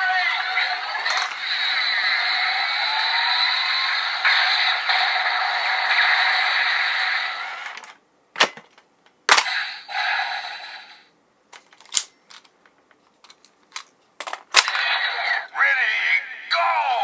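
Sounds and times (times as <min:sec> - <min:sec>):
plastic clicks and snaps: 0:11.5 - 0:14.8.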